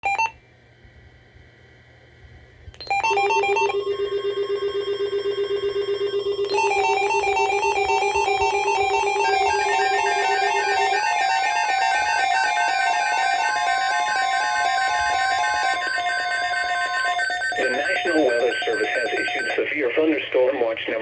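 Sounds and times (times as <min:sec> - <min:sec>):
synthesized beeping melody: 0:02.9 - 0:19.6.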